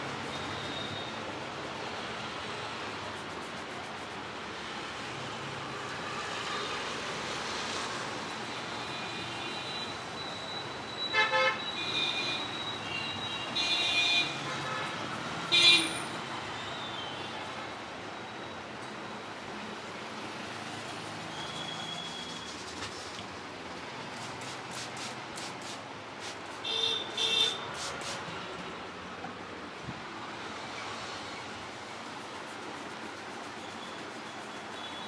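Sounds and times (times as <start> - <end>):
road traffic noise: 0.0 - 35.0
vehicle horns honking: 11.1 - 12.4, 26.6 - 27.8.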